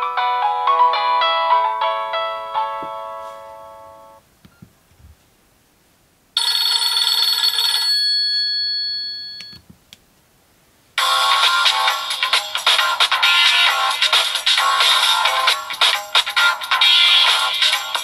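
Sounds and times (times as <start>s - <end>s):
melodic phone ringtone: 0.0s - 4.2s, 6.4s - 9.6s, 11.0s - 18.0s
bright phone ringtone: 6.4s - 9.6s.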